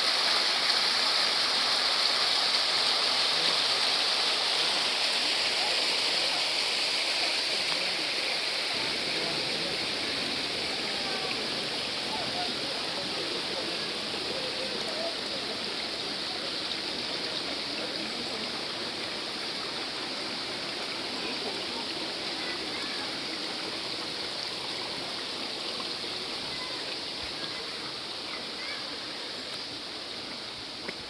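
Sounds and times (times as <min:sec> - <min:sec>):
stream rushing: 0:00.0 - 0:31.0.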